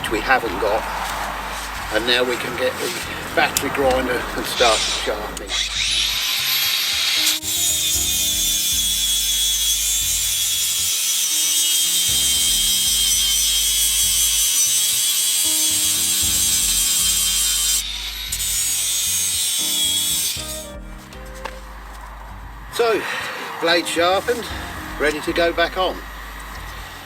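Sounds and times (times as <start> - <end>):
background music: 0.0 - 11.0, 11.6 - 27.0
angle grinder sharpening steel blade: 4.6 - 20.7.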